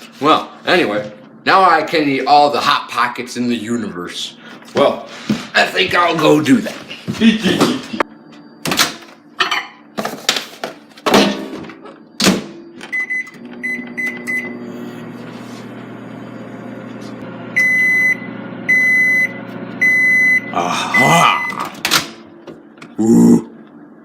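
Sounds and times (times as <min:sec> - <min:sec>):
microwave humming: 0:00.2 - 0:24.0
long microwave beeps: 0:08.0 - 0:09.4, 0:11.8 - 0:21.7
keypad beeps: 0:12.8 - 0:14.5.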